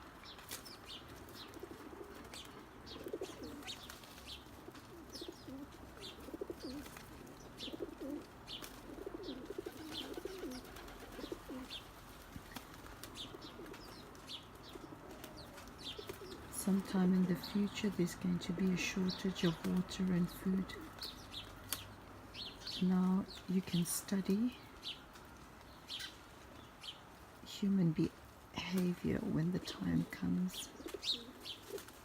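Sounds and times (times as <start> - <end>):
pigeons cooing: 0.3 - 23.5, 29.1 - 32.0.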